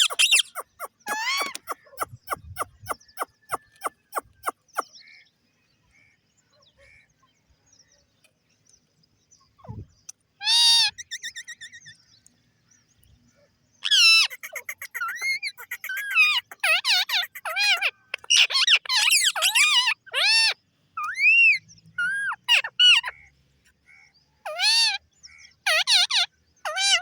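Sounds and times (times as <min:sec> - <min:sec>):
parrots chirping and squawking: 0:00.0 - 0:04.9, 0:13.8 - 0:21.3, 0:24.5 - 0:25.0, 0:25.7 - 0:27.0.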